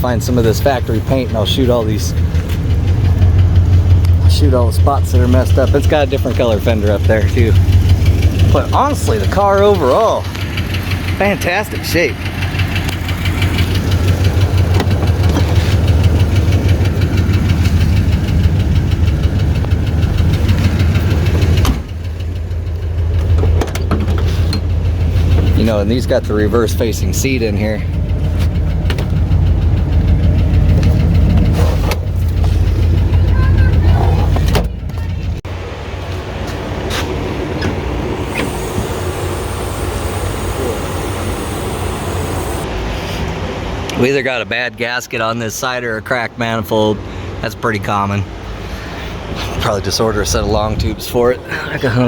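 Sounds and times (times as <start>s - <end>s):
rapid engine ticking: 0.0s - 23.5s, 24.4s - 34.2s, 37.8s - 42.7s
car engine idling: 0.0s - 23.6s, 24.3s - 42.8s.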